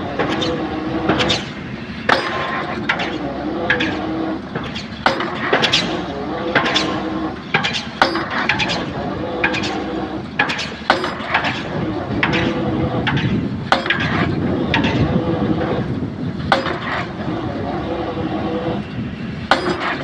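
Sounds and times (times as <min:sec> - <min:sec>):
diesel engine running: 0:00.0 - 0:20.0
sharp metallic clanks with ringing: 0:01.2 - 0:03.1, 0:04.6 - 0:12.6, 0:19.5 - 0:20.0.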